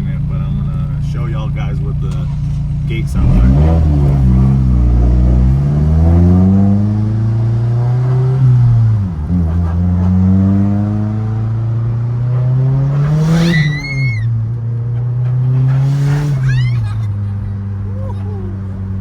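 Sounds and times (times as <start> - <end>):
turbocharged car engine accelerating: 0.0 - 19.0
high rising turbo whistle: 12.8 - 14.4.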